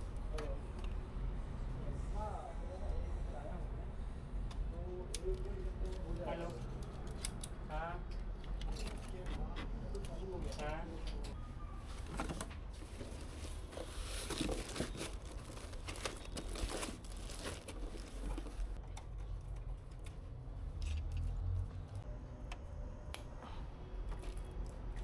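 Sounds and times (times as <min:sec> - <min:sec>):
rustling and crinkling: 0:11.8 - 0:18.8.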